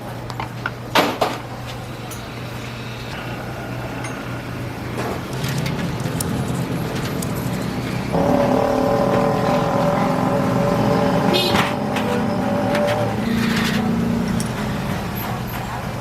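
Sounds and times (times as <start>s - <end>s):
steady pitched hum: 1.8s - 15.0s
motor running: 8.2s - 13.1s.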